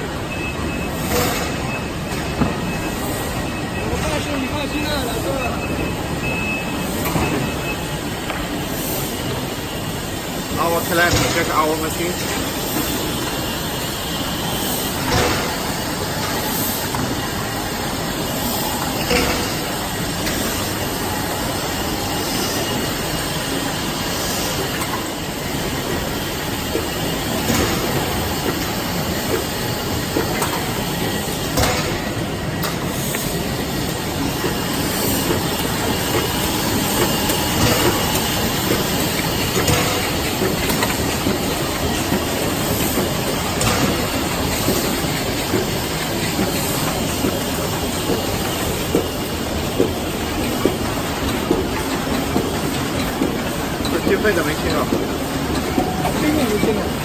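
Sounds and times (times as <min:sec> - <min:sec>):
machine hiss: 0:06.7 - 0:57.0
machine clatter: 0:22.2 - 0:57.0.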